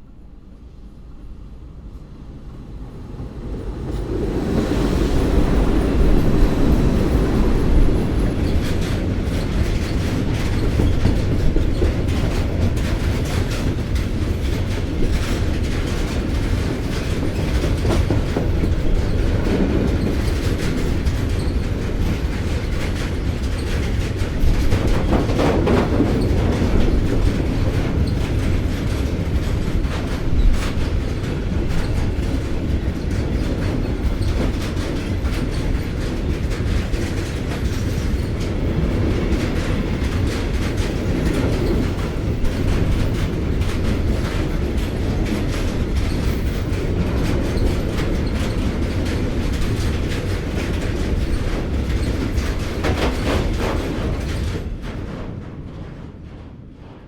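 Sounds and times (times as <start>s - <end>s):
train rumbling past: 0.0s - 57.0s
wheels clacking over rail joints: 3.2s - 56.2s.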